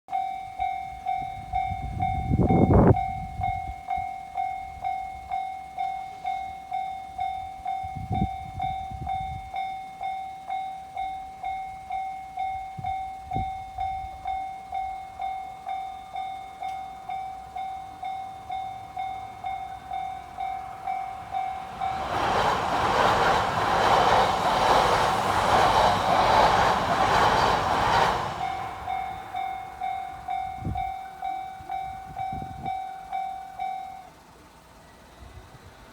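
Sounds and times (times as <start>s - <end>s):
level crossing warning bell: 0.1s - 35.1s
high-speed train rushing past: 1.1s - 4.0s, 12.8s - 35.9s.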